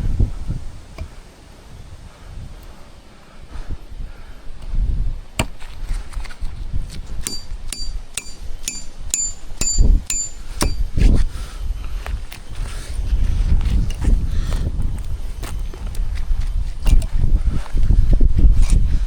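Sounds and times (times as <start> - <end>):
sharp metal strikes ringing: 7.2 - 11.0.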